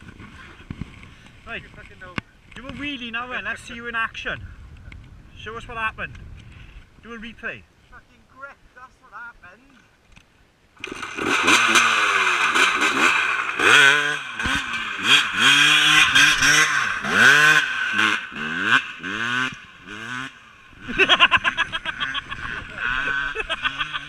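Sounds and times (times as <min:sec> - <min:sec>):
motorcycle engine revving: 0:10.8 - 0:24.0.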